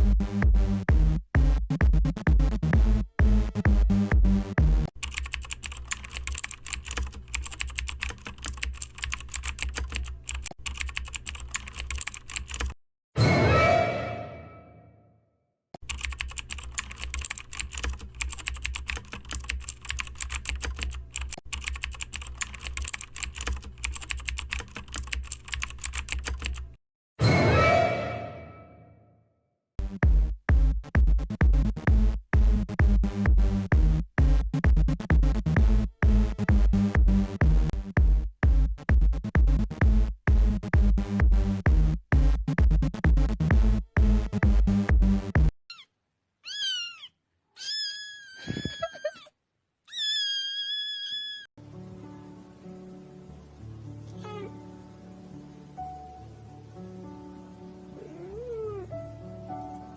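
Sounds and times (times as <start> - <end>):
typing on computer keyboard: 5.0 - 12.8, 15.8 - 26.6
loud ringing hit: 13.2 - 15.0.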